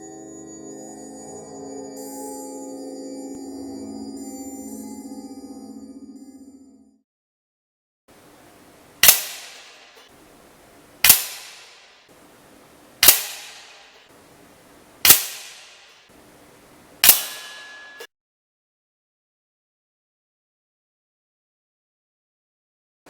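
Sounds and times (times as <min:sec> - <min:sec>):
air rifle shots: 0:08.9 - 0:18.1.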